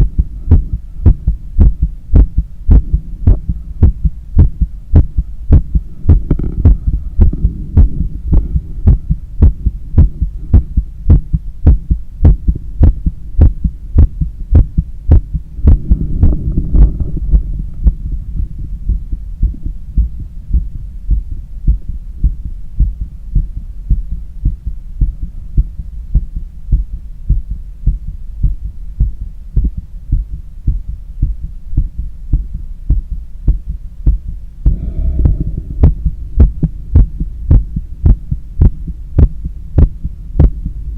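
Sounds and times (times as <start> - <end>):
heartbeat through stethoscope: 0.0 - 40.8
low rushing noise: 14.4 - 23.0, 34.0 - 40.9.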